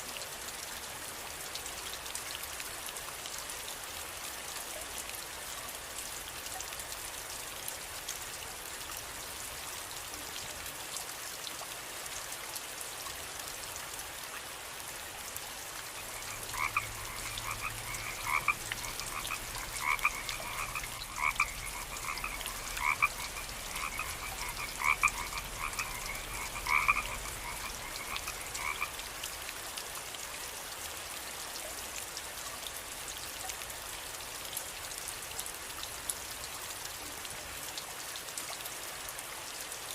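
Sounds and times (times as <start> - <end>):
steady rain falling: 0.0 - 39.9
frog croaking: 16.0 - 29.0.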